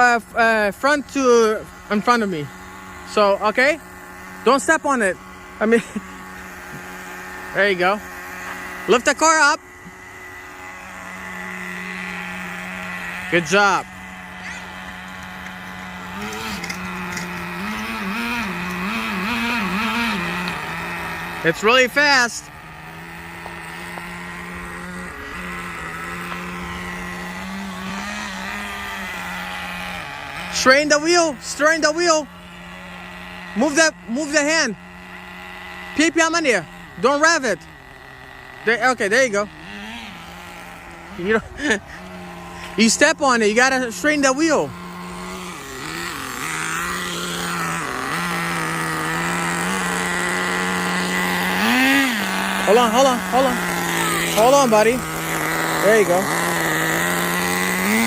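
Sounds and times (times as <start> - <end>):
small two-stroke engine buzzing: 0.0 - 58.0.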